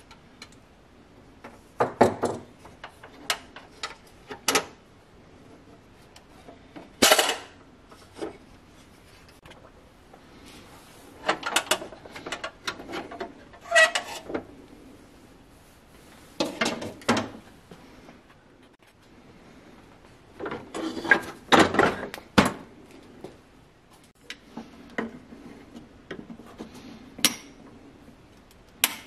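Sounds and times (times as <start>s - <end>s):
hard parts clattering and clicking: 1.4s - 4.8s, 5.6s - 8.4s, 11.2s - 14.5s, 20.4s - 22.7s.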